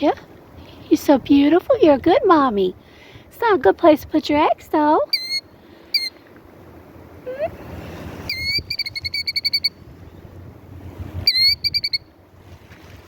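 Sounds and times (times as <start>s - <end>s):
wind rumble on microphone: 0.0s - 5.1s, 6.8s - 13.0s
bird alarm calls: 5.1s - 6.2s, 8.3s - 9.8s, 11.3s - 12.1s.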